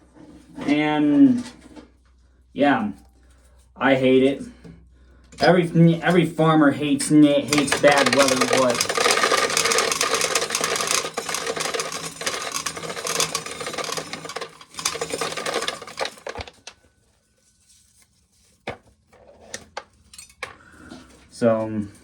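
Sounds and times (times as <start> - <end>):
corn kernels rattling in sheller: 7.4 - 16.8.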